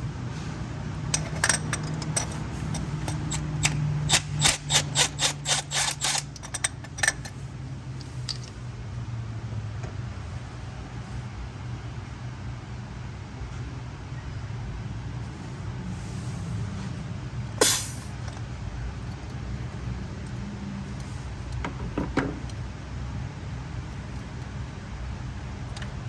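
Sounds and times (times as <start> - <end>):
ratchet wrench clicking: 1.2 - 7.2, 17.6 - 18.1.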